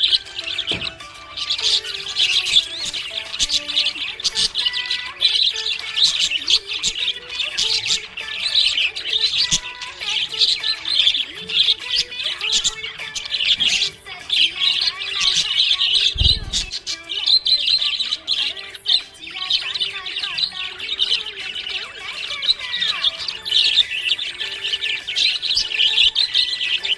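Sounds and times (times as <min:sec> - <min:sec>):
parrots chirping: 0:00.0 - 0:26.9
low thump: 0:16.1 - 0:16.8.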